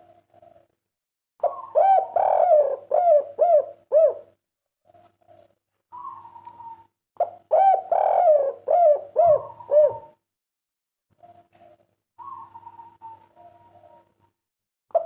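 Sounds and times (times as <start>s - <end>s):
dove cooing: 1.4s - 10.2s, 11.1s - 14.3s.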